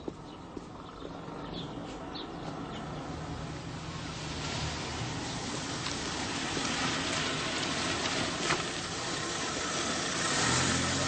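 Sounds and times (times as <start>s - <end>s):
steady rushing rain-like noise: 3.5s - 10.8s.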